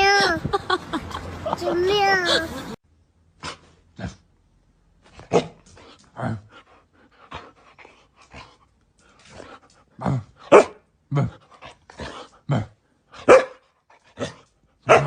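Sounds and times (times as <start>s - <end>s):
dog barking: 5.3s - 5.6s, 10.5s - 10.8s, 13.2s - 13.6s, 14.2s - 15.0s.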